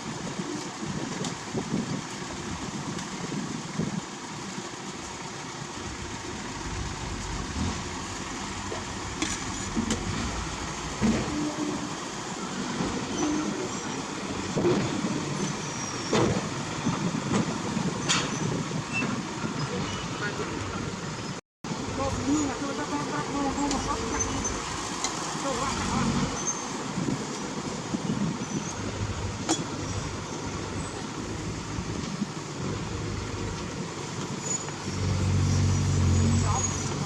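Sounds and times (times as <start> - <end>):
heavy machinery running: 5.9 - 17.6
sharp knocks: 9.2 - 11.8, 14.6 - 16.7.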